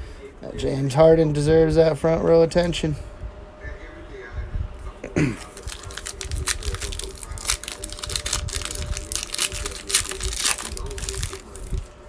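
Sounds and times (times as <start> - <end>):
card pack wrapper crinkling and tearing: 5.4 - 11.9.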